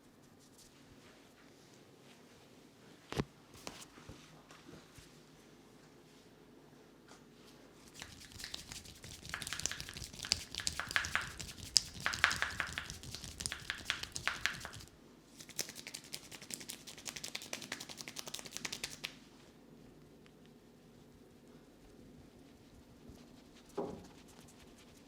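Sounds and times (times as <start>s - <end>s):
hands rustling hair in head massage: 7.9s - 19.2s.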